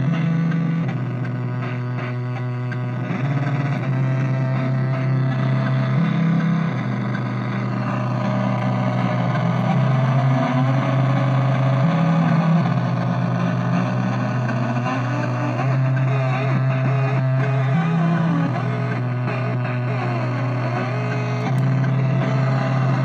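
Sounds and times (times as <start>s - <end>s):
synthesizer low drone: 0.0s - 23.0s.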